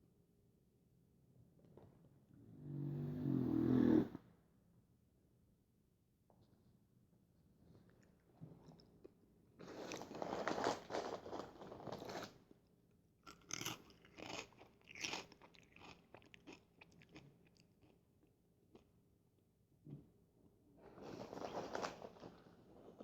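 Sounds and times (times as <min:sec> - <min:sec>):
corn chips crunching: 0:09.6 - 0:12.3, 0:13.3 - 0:17.9.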